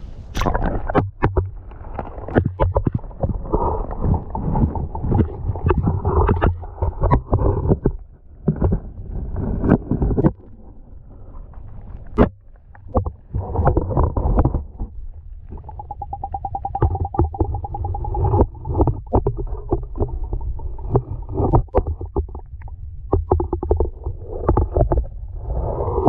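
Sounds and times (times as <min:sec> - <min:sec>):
kayak hull scraping through ice: 0:00.6 - 0:12.2, 0:18.1 - 0:22.3.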